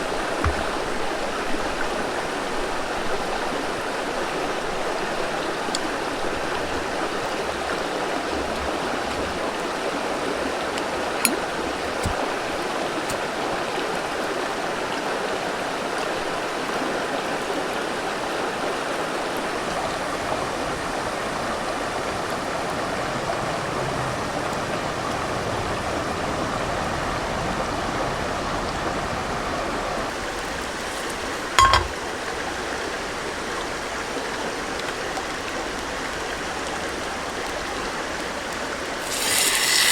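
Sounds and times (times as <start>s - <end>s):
river running over rocks: 0.0s - 16.9s, 25.8s - 33.4s
short knock: 31.6s - 32.0s.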